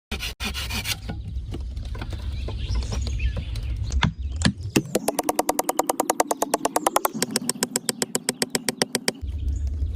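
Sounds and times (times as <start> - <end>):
low rumble: 9.2 - 9.9.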